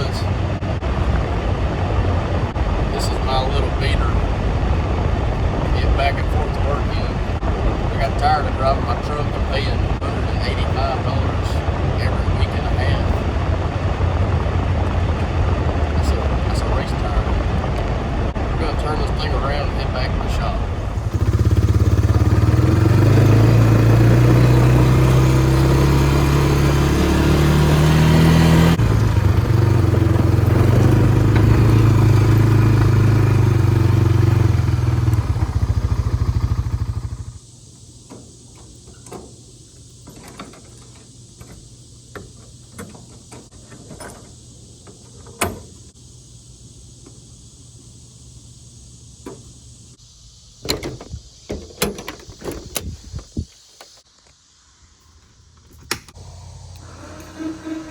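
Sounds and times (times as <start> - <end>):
car engine running: 0.0 - 37.4, 56.2 - 57.9.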